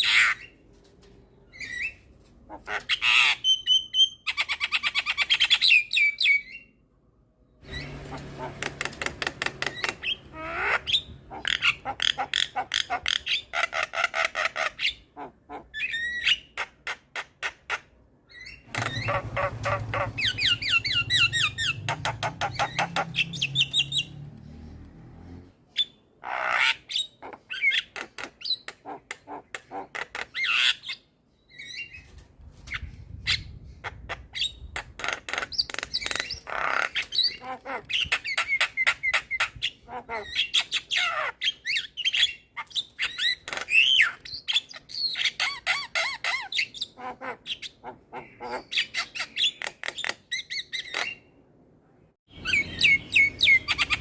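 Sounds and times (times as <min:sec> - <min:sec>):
bird singing squawks and whistles: 0:18.3 - 0:24.2, 0:52.3 - 0:54.0.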